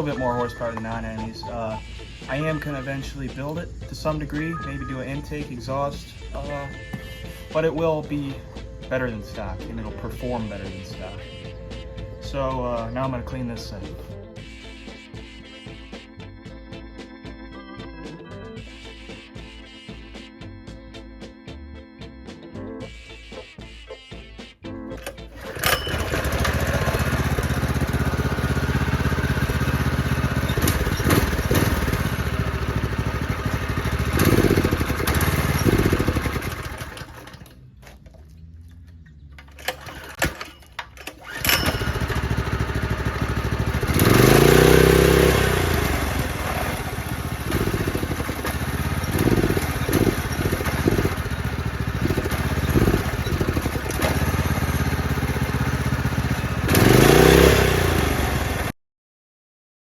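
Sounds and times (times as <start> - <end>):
starter cord pulls: 25.0 - 38.3, 39.0 - 57.3
small engine revving: 25.0 - 58.8.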